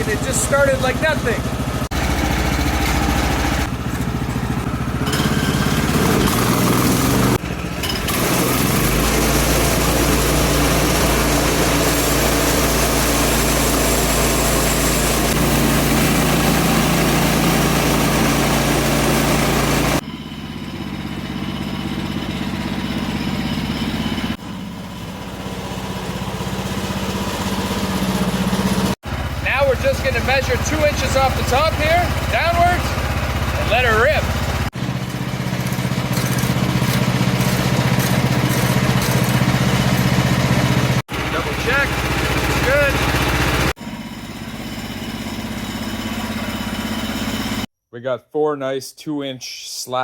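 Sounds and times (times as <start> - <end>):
sawmill engine running: 0.0 - 47.7
band blade cutting log: 35.1 - 41.0.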